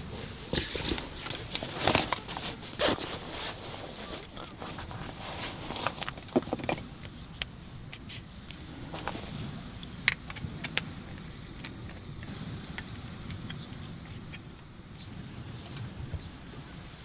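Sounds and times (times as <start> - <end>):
small hard objects clinking: 0.1 - 7.1.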